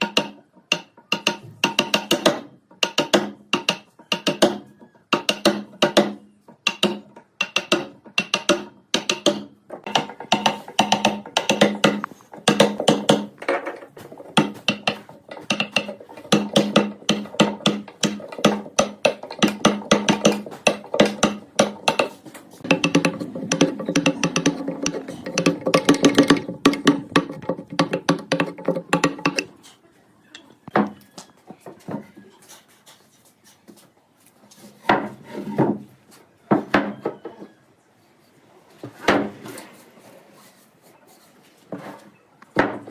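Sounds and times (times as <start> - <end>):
rapid wooden knocks: 0.0 - 29.5.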